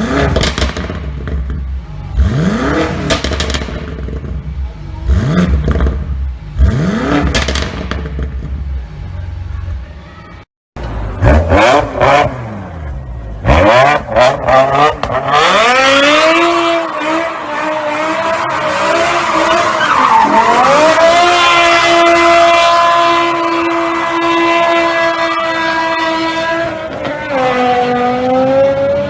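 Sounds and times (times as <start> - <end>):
car engine revving: 0.0 - 10.1, 10.8 - 29.0
tyre squeal: 19.2 - 20.8.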